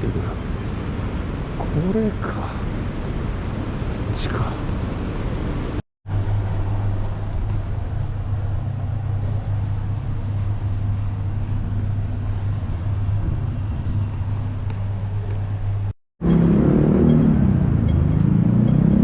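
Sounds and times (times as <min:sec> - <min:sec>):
even rumble: 0:01.4 - 0:19.0
low mechanical hum: 0:02.8 - 0:16.5.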